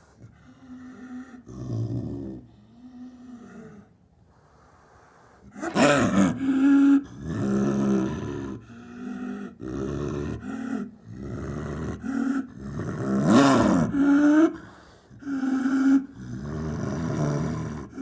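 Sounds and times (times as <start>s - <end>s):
big cat roaring and growling: 5.6s - 18.0s.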